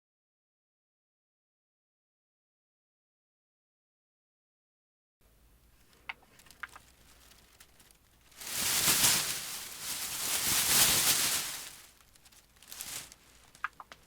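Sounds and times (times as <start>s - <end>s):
rustling leaves: 6.3s - 13.8s.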